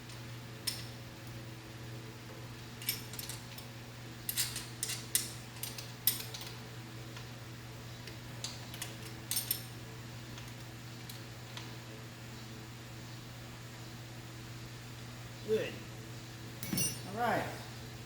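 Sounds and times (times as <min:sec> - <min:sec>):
steady low hum: 0:00.0 - 0:18.0
metal tools clinking: 0:16.6 - 0:17.2.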